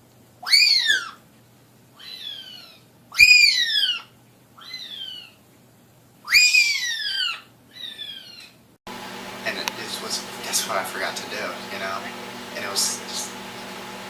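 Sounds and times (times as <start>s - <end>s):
parrot whistled calls: 0.4s - 1.2s, 2.0s - 5.4s, 6.3s - 8.5s.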